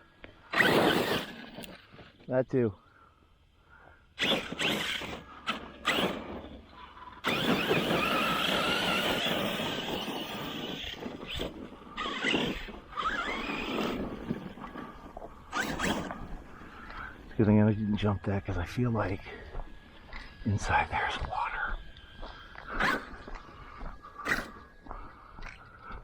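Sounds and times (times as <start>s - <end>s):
tyres on dirt and gravel: 0.0s - 3.2s, 3.8s - 26.0s
rc truck motor whining: 0.2s - 2.2s, 4.0s - 18.0s, 21.9s - 25.1s.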